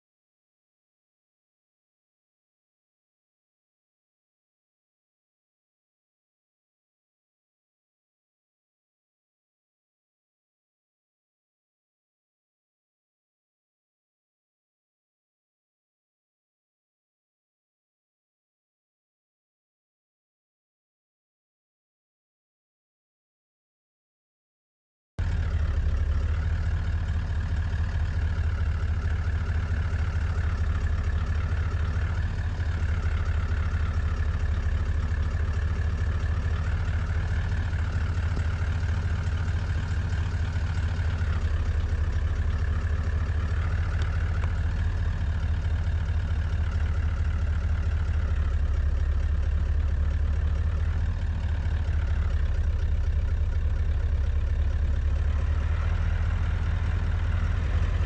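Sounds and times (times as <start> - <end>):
car engine idling: 25.2 - 58.0.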